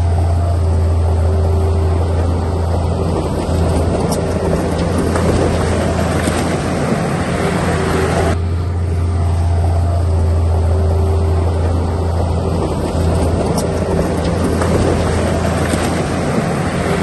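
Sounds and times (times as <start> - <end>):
diesel engine droning: 0.0 - 17.0.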